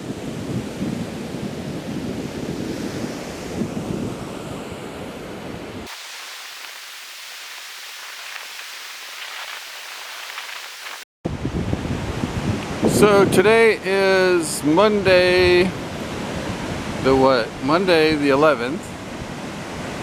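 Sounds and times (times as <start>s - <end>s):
rushing water and surf: 0.0s - 13.2s, 15.7s - 17.2s, 18.8s - 20.0s
wind buffeting microphone: 11.3s - 13.8s.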